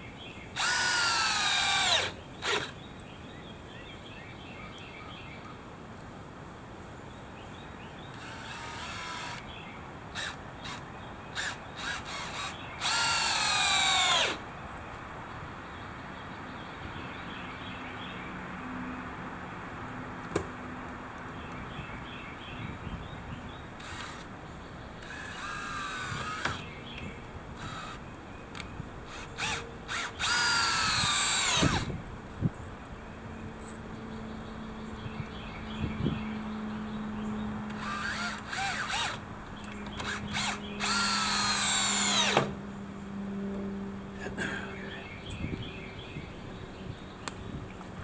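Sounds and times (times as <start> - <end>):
power drill driving screws: 0.6 - 2.8, 8.1 - 9.5, 10.1 - 14.4, 23.8 - 24.3, 25.0 - 26.7, 27.6 - 28.0, 29.1 - 32.0, 37.7 - 39.2, 39.8 - 42.6.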